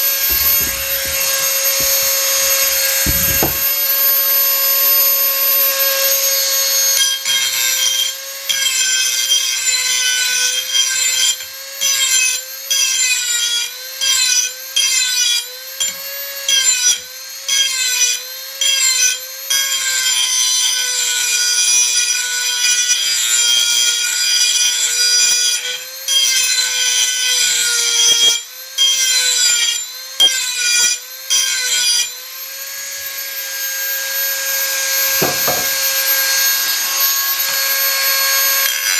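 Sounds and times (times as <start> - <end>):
rasping metal grinding: 0.0 - 4.0, 33.8 - 38.9
rotary tool whine: 0.0 - 8.2, 26.7 - 38.9.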